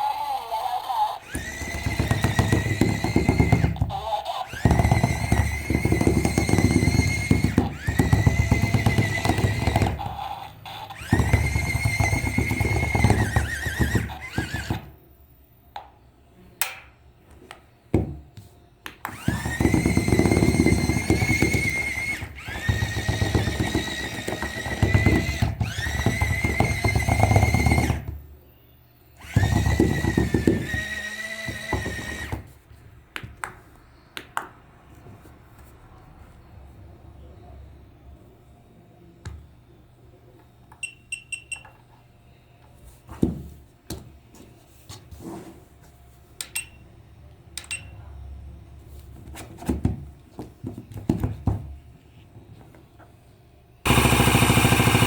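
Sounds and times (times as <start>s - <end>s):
electric toy motor whining: 0.0s - 14.9s, 19.1s - 28.1s, 29.2s - 32.5s.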